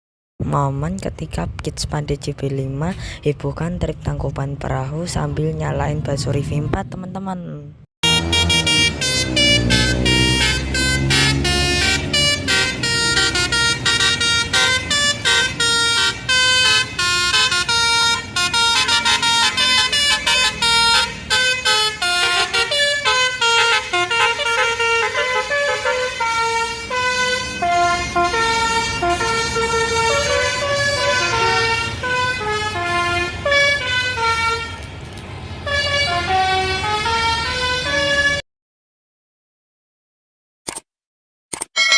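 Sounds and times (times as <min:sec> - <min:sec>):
bus melody horn: 0:08.0 - 0:34.9, 0:35.6 - 0:38.4.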